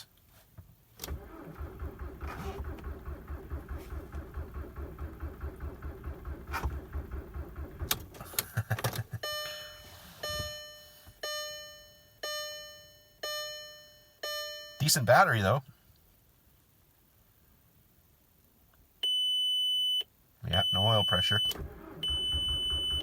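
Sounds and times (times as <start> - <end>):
diesel engine cranking: 1.0 - 9.0, 21.5 - 23.0
dashboard warning chime: 9.2 - 15.4, 19.0 - 23.0.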